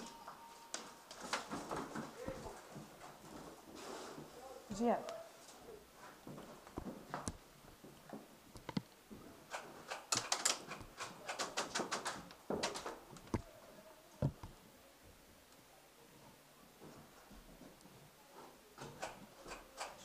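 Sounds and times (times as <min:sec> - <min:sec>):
sharp clicks: 0:09.5 - 0:13.5.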